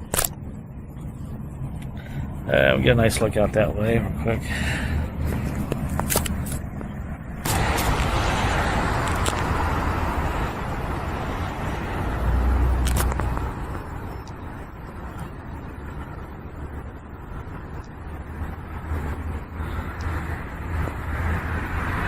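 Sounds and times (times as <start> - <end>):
low rumble of passing traffic: 0.0 - 22.0
vehicle swishing past: 7.4 - 13.5.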